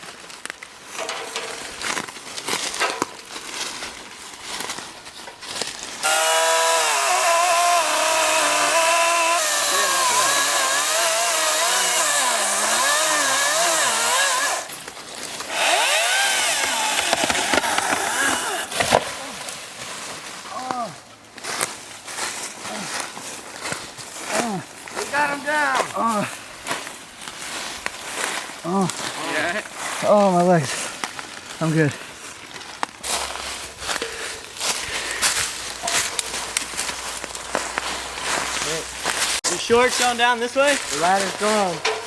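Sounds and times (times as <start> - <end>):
electric chainsaw cutting: 6.0 - 14.8, 15.4 - 19.0.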